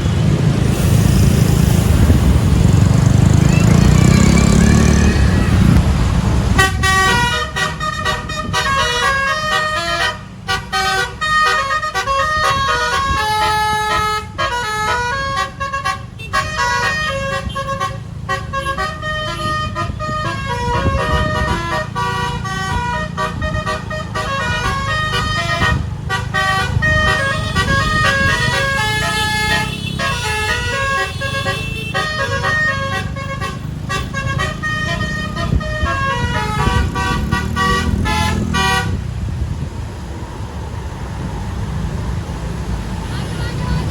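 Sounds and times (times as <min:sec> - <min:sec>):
bus engine running: 0:00.0 - 0:43.9
musical bus horn tune: 0:06.5 - 0:39.2.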